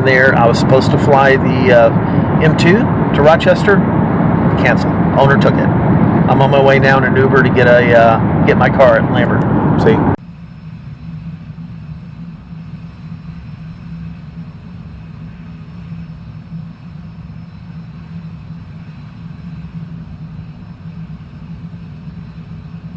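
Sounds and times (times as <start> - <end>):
car road and engine rumble: 0.0 - 22.9.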